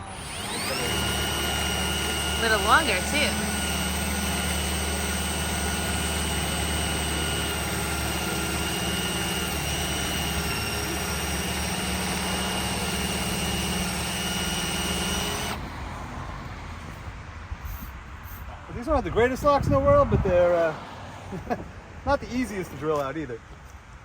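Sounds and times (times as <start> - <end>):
electric drill whining: 0.0 - 15.7.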